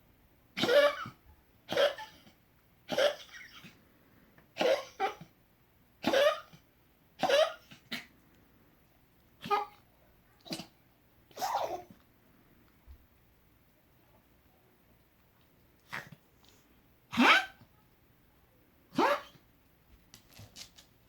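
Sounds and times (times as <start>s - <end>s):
pet sneezing: 0.6s - 3.8s, 4.6s - 5.3s, 6.0s - 6.6s, 7.2s - 8.1s, 9.4s - 9.8s, 10.4s - 12.0s, 15.8s - 16.2s, 17.1s - 17.6s, 18.9s - 19.4s.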